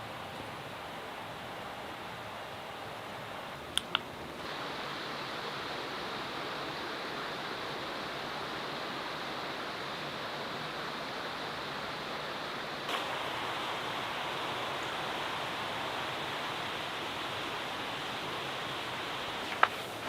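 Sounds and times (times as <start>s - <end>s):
steady rushing noise: 0.0s - 20.0s
sharp clicks: 3.7s - 4.4s.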